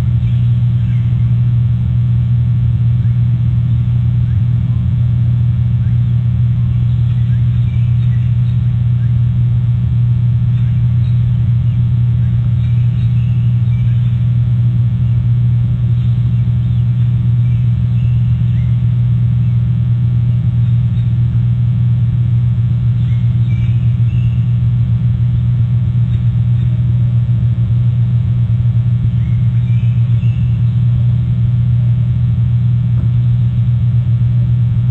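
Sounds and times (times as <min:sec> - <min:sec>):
low electrical hum: 0:00.0 - 0:34.9
faint high chirps: 0:05.8 - 0:09.2, 0:10.5 - 0:15.2, 0:15.9 - 0:19.6, 0:22.9 - 0:24.6, 0:29.1 - 0:31.0.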